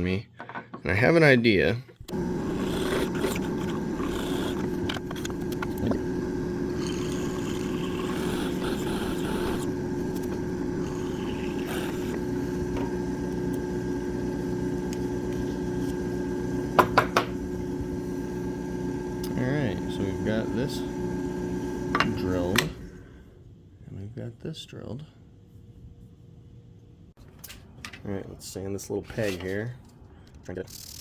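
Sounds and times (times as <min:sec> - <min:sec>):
electric drill boring wood: 0:02.0 - 0:23.0.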